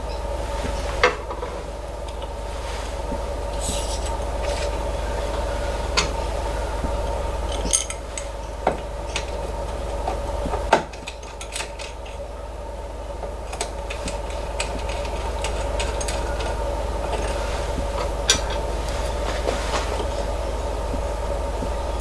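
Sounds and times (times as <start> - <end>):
steady machine hum: 0.0 - 22.0
metallic clinks of hand tools: 3.6 - 4.8, 7.5 - 8.3, 13.6 - 18.7.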